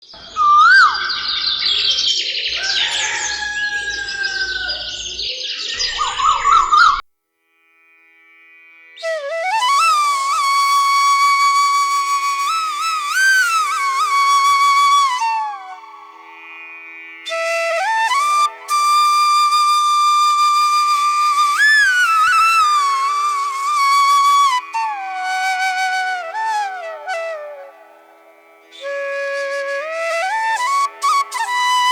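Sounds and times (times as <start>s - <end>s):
solo flute melody: 9.0s - 31.9s.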